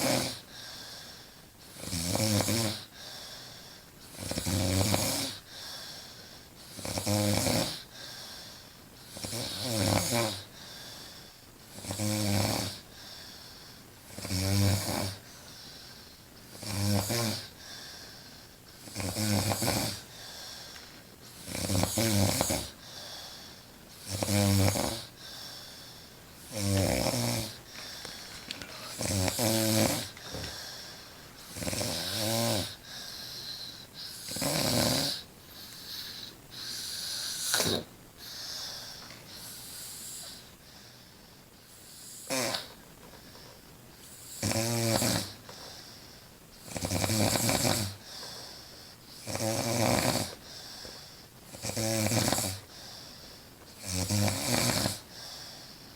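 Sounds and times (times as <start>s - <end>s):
woman snoring loudly: 0.0s - 0.4s, 14.1s - 15.2s, 18.9s - 20.0s, 21.4s - 22.8s, 24.0s - 25.1s, 26.5s - 27.6s, 28.5s - 30.6s, 31.5s - 32.8s, 34.1s - 35.2s, 44.4s - 45.4s, 46.7s - 48.0s, 49.2s - 50.4s, 51.5s - 52.7s, 53.8s - 55.0s.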